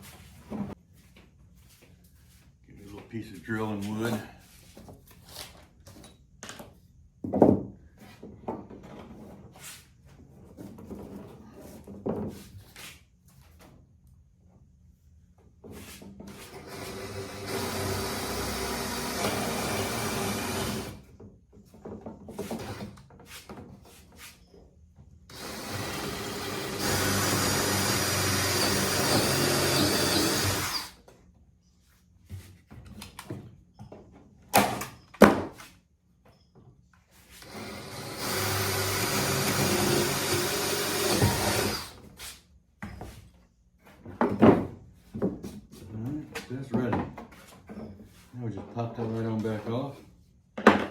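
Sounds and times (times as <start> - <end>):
power drill boring through plywood: 16.4 - 21.0, 22.6 - 23.0, 25.3 - 31.0, 37.4 - 42.0.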